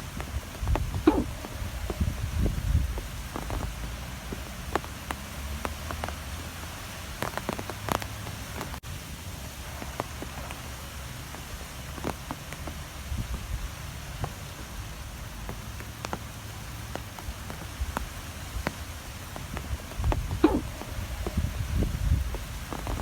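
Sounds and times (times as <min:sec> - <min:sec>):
gusting wind rumble: 0:00.0 - 0:05.1, 0:17.3 - 0:23.0
rain hiss: 0:00.0 - 0:23.0
raindrops tapping a surface: 0:00.0 - 0:23.0.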